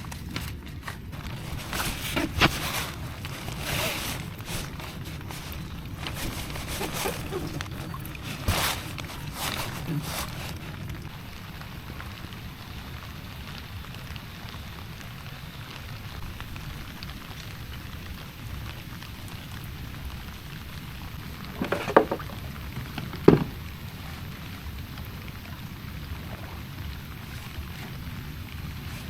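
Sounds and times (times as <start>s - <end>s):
heavy rain falling: 0.0s - 29.0s
sharp knocks: 23.2s - 23.6s.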